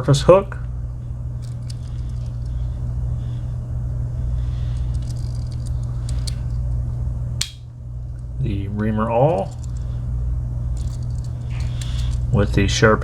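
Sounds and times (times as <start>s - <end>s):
steady low hum: 0.0s - 13.0s.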